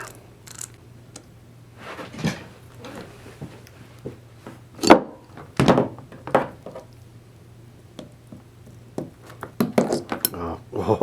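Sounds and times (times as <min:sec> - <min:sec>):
tools knocking on workbench: 0:04.8 - 0:06.8.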